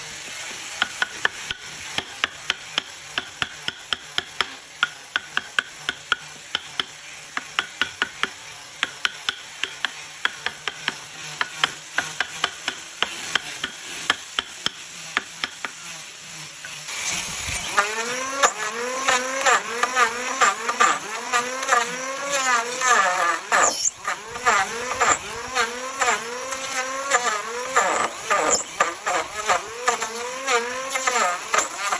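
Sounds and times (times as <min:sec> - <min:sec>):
wavering high-pitched whine: 0:23.0 - 0:27.0.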